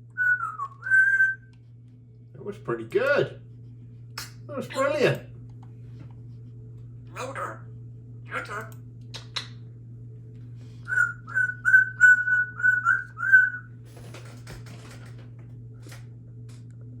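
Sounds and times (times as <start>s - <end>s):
parrot whistling: 0.1s - 1.5s, 10.9s - 13.7s.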